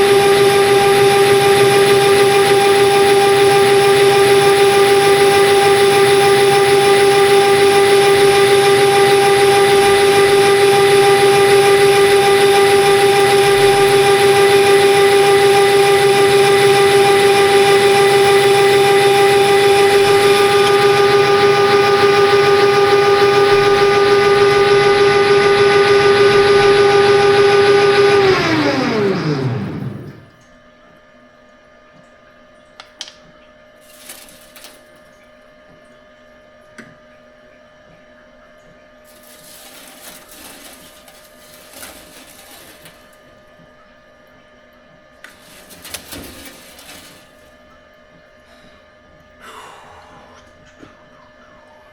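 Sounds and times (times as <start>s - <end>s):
lathe spinning down: 0.0s - 30.4s
metal lathe humming: 0.0s - 30.4s.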